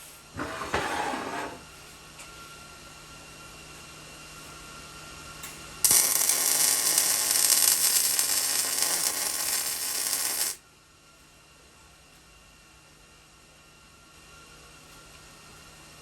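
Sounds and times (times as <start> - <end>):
welder arc crackling: 5.8 - 10.6.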